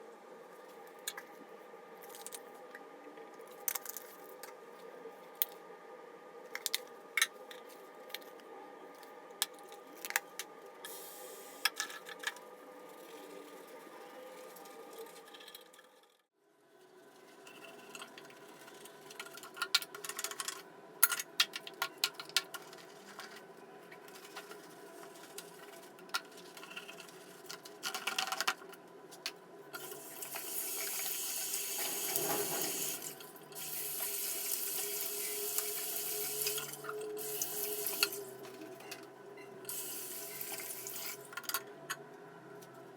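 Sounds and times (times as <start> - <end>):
tap running into a basin: 29.8 - 38.3.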